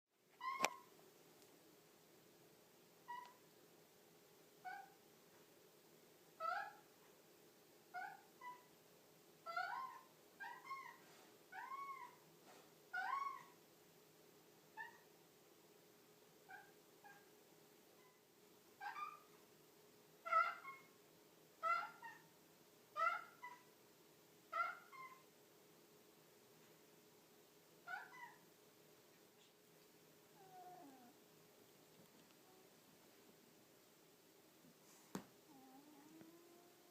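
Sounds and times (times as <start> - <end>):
cat meowing: 30.4 - 31.2.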